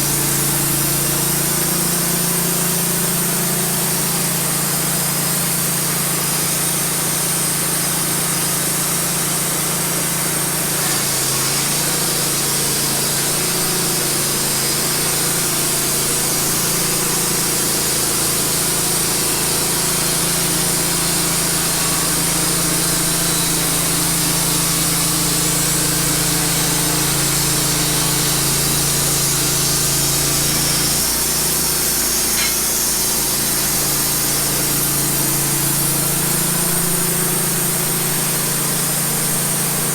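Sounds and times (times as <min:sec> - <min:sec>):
sawmill engine running under load: 0:00.0 - 0:39.9
saw blade hissing in wood: 0:10.6 - 0:39.9.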